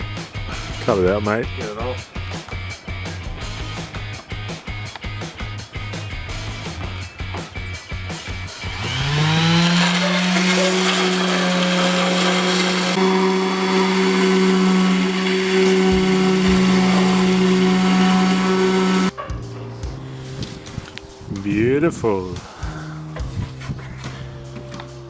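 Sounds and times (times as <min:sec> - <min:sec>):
power tool motor spinning: 0:08.5 - 0:19.1.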